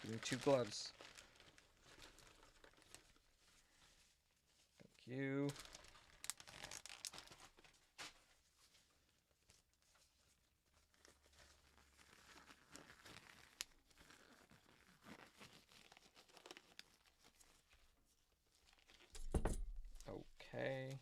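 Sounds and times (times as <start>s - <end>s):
gloves rustling and crinkling: 0.0s - 21.0s
thump: 19.2s - 20.0s.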